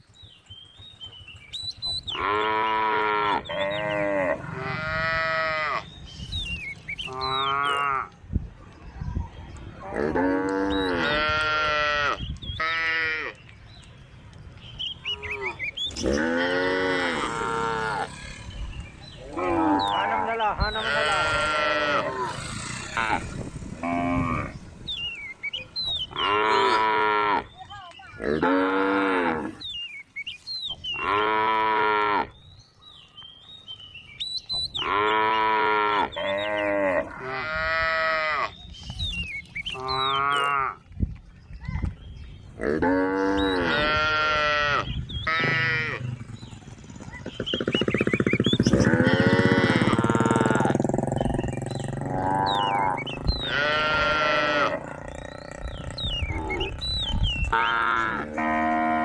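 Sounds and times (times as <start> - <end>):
cows mooing: 2.1 - 5.9, 7.1 - 8.2, 9.8 - 13.4, 15.1 - 18.6, 19.2 - 24.8, 26.0 - 27.6, 28.2 - 29.6, 31.0 - 32.4, 34.8 - 38.6, 39.8 - 40.8, 42.6 - 46.6, 47.9 - 59.0.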